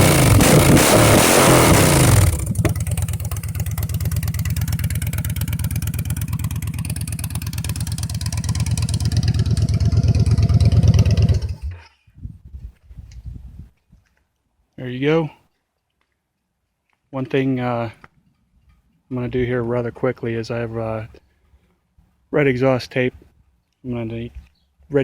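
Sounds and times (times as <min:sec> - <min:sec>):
motorcycle pulsing idle: 0:00.0 - 0:11.7
motorcycle engine revving: 0:00.0 - 0:11.8.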